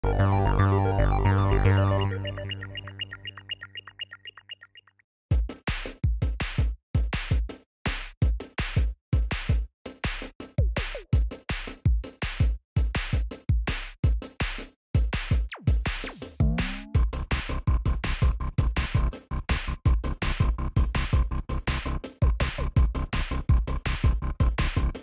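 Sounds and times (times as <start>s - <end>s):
electronic music with drum-machine beat: 0.0s - 4.6s, 8.2s - 25.0s
falling synth sweep: 0.1s - 3.5s.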